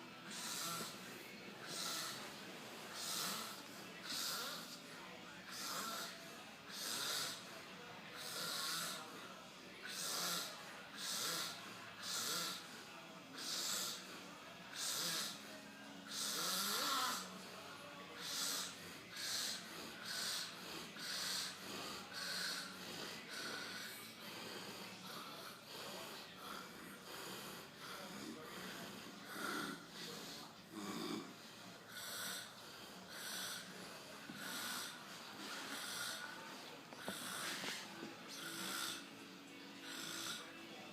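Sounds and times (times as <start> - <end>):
man snoring loudly: 0.3 - 1.0, 3.0 - 4.8, 8.2 - 9.1, 16.1 - 17.3, 28.1 - 30.0, 30.7 - 32.5, 38.3 - 39.0, 39.8 - 40.6.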